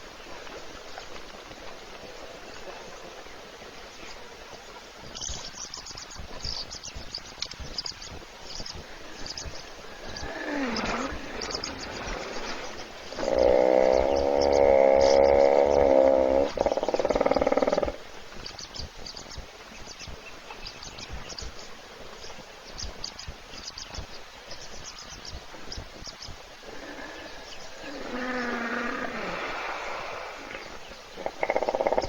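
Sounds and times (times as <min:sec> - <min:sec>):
faint gliding animal call: 0:07.8 - 0:18.6, 0:26.4 - 0:32.0.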